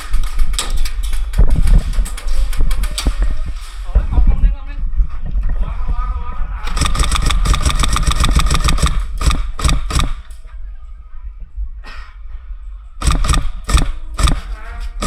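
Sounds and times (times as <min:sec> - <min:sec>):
airsoft gun full-auto burst: 0:06.7 - 0:10.3, 0:13.0 - 0:14.7
sharp single gunshots: 0:06.7 - 0:10.3, 0:13.0 - 0:14.6.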